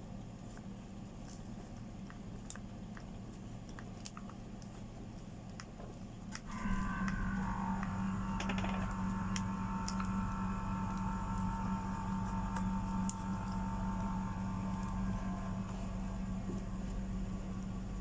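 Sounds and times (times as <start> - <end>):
electric motor humming and whining: 6.4 - 18.0.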